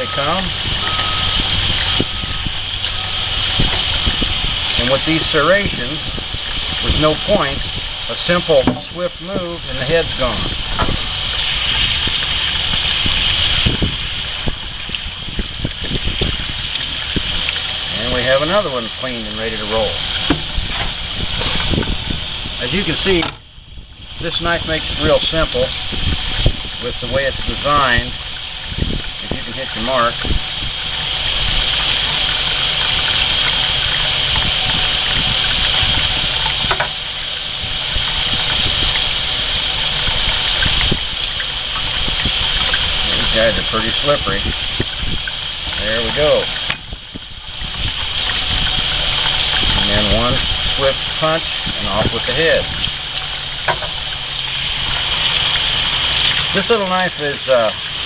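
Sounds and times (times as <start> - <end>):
running water: 0.0 - 58.0
fish knocking: 8.6 - 9.0, 20.2 - 21.9, 36.7 - 37.0, 53.6 - 54.2.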